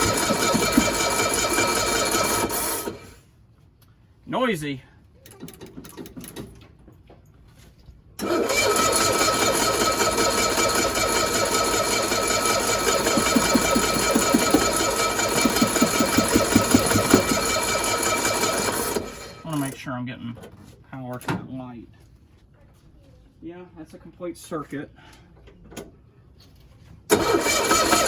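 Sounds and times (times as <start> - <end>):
engine running noisily: 0.0 - 2.6, 10.1 - 18.2.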